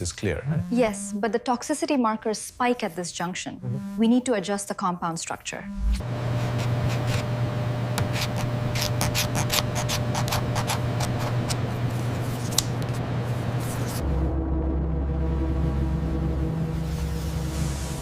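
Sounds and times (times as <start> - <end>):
low hum: 0.0 - 1.4, 3.6 - 4.2, 5.6 - 18.0.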